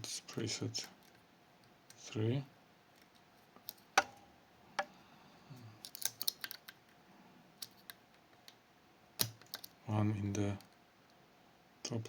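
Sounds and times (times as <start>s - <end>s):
metallic clicks of lock picking: 5.8s - 6.8s.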